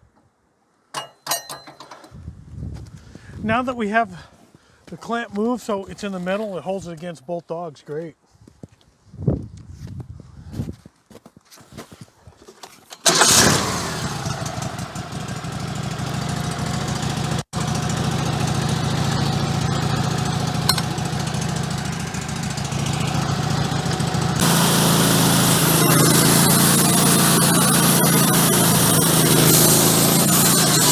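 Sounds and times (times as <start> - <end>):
sawmill engine running: 13.0 - 30.9.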